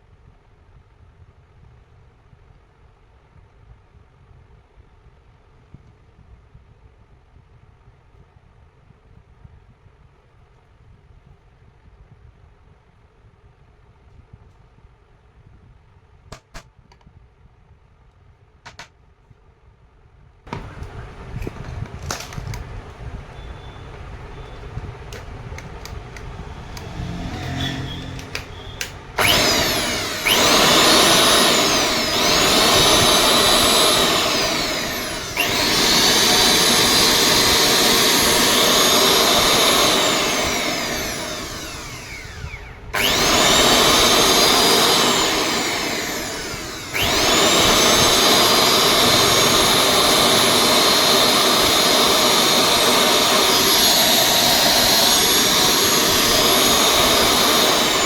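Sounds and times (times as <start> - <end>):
electric planer motor whine: 25.8 - 58.0.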